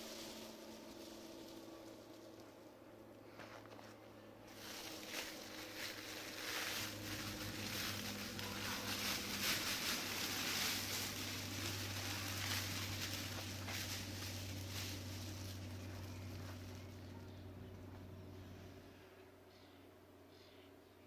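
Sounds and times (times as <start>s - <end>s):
foil sheeting crinkling: 0.0s - 2.6s, 4.5s - 17.1s
low hum: 0.0s - 21.0s.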